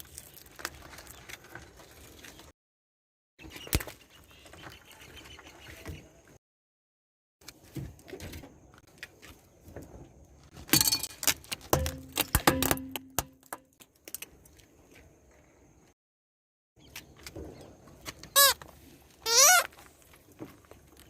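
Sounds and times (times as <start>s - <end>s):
cracks and snaps of crushing: 0.0s - 2.5s, 11.0s - 14.7s.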